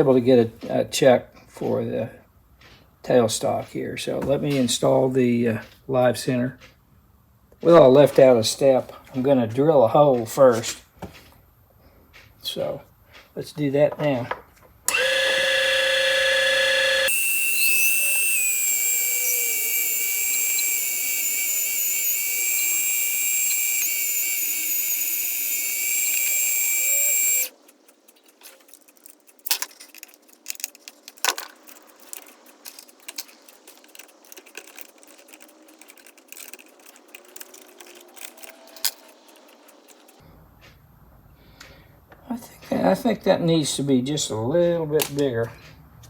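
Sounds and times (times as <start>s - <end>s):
lathe motor whining: 14.9s - 28.0s, 31.7s - 40.2s
clicks and taps of handling: 27.6s - 40.8s.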